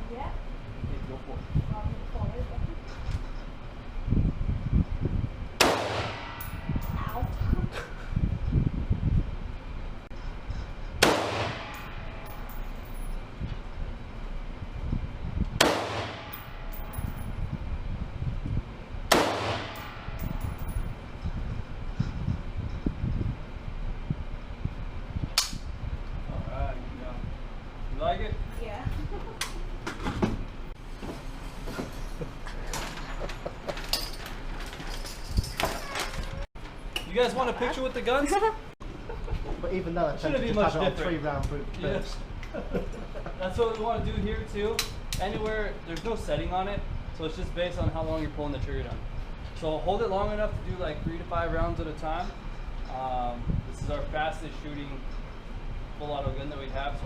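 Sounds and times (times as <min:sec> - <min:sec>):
steady low hum: 0:00.0 - 0:57.0
rifle gunshots echoing: 0:05.6 - 0:06.4, 0:11.0 - 0:11.8, 0:15.6 - 0:16.4, 0:19.1 - 0:20.0.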